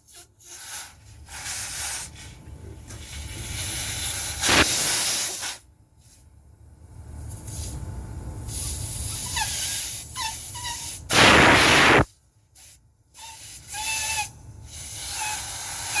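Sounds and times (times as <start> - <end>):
hissing water spray: 0.4 - 2.2, 3.0 - 5.6, 10.8 - 12.0.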